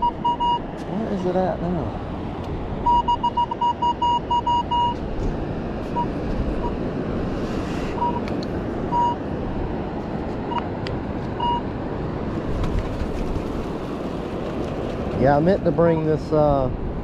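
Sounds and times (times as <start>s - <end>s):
metal detector beeps: 0.0s - 0.6s, 2.8s - 5.0s, 5.9s - 6.8s, 8.0s - 8.3s, 8.9s - 9.2s, 11.4s - 11.7s
steady rushing background: 12.0s - 16.2s.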